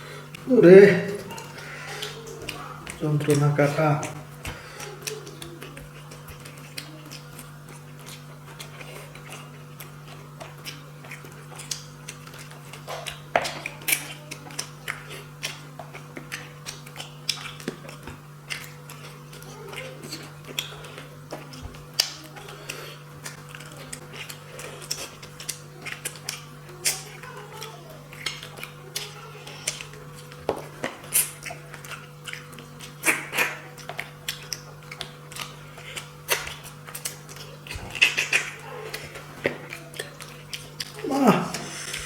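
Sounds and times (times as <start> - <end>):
steady low hum: 0.0 - 42.0
wet chewing smacks and clicks: 1.1 - 42.0.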